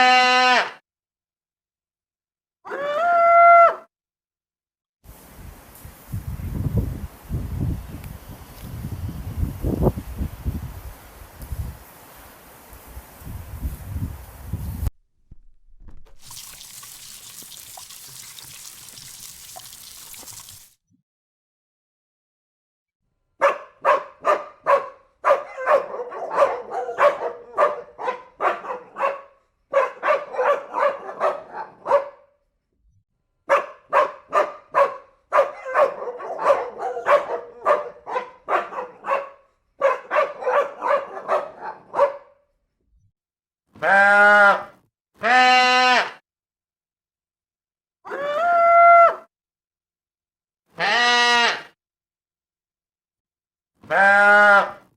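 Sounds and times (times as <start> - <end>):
dog barking: 23.4 - 32.3, 33.5 - 42.4.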